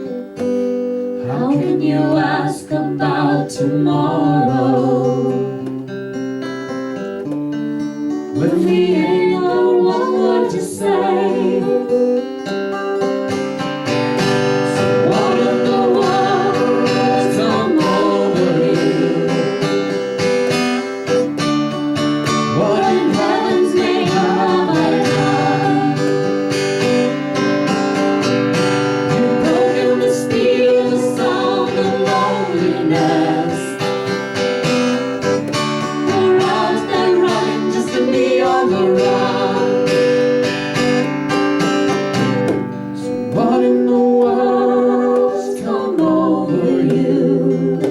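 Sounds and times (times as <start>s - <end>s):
acoustic guitar strumming: 0.0s - 47.9s
melody sung or played: 8.3s - 13.5s.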